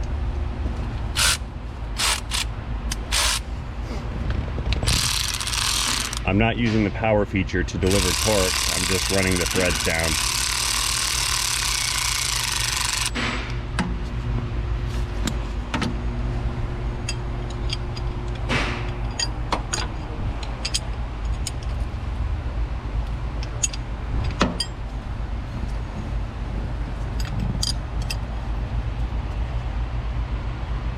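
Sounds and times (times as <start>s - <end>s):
steady low hum: 0.0s - 30.9s
power ratchet whirring: 1.2s - 1.4s, 2.0s - 3.5s, 4.7s - 6.2s, 7.8s - 13.2s
clicks and metal taps of tools: 17.0s - 21.9s, 23.4s - 24.8s.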